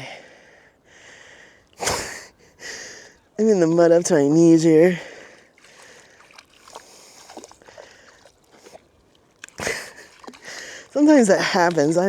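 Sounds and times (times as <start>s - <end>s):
mud slosh: 3.4s - 12.0s
feet squelching in wet mud: 5.0s - 12.0s.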